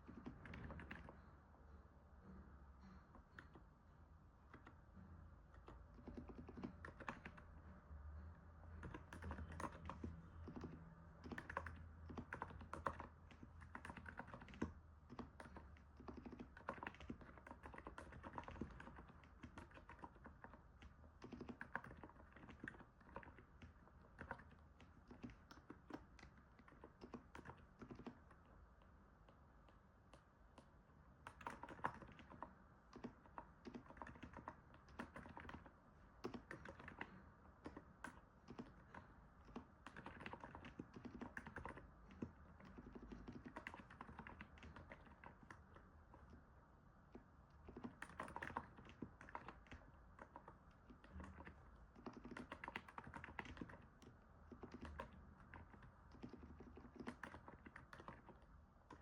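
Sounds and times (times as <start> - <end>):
soft keyboard keystrokes: 0.0 - 1.3, 2.8 - 3.8, 4.4 - 7.5, 8.7 - 59.0
faint low hum: 0.0 - 59.0.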